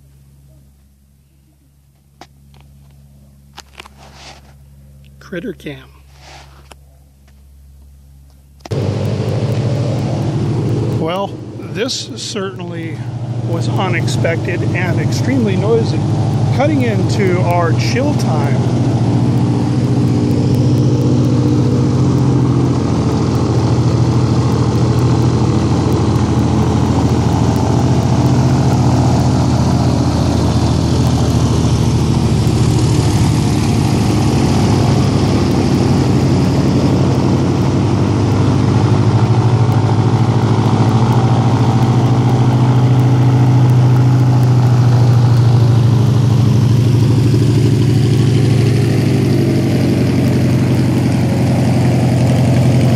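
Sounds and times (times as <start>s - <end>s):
engine droning low: 0.0s - 52.9s.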